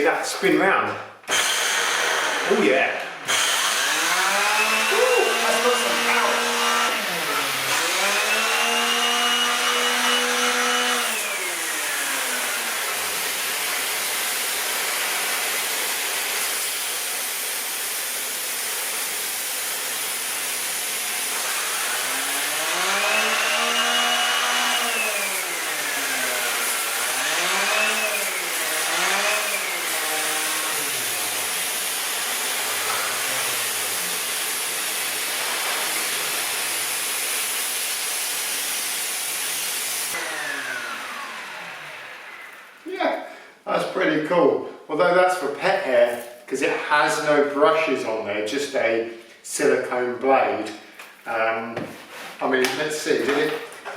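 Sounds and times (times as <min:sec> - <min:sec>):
vacuum cleaner running: 0:01.3 - 0:43.0.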